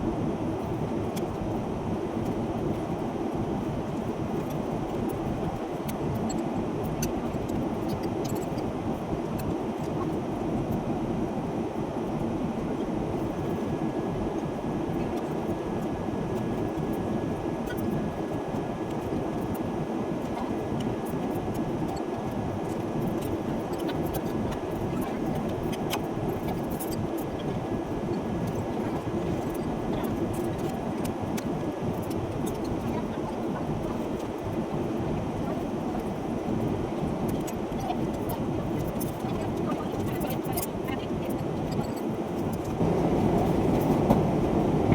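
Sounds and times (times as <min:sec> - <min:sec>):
vehicle cabin rumbling drone: 0:38.8 - 0:44.9.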